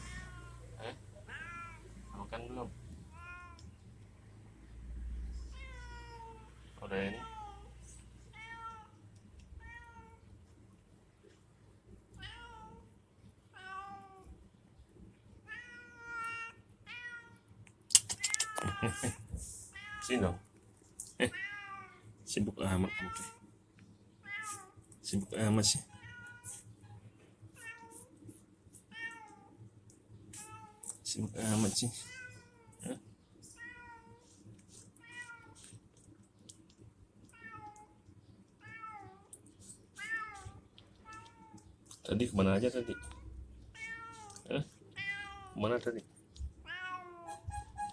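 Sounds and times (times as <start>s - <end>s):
cat meowing: 0.0s - 2.2s, 3.1s - 3.8s, 5.4s - 9.0s, 9.6s - 10.3s, 12.2s - 12.8s, 13.6s - 14.3s, 18.2s - 20.4s, 38.6s - 39.3s, 42.7s - 45.7s, 46.5s - 47.9s.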